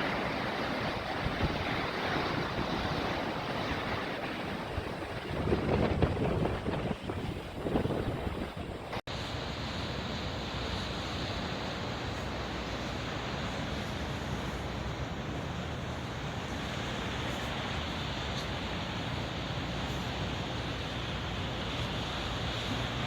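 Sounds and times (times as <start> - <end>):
wind buffeting microphone: 0.0 - 9.0
sea waves: 0.0 - 23.0.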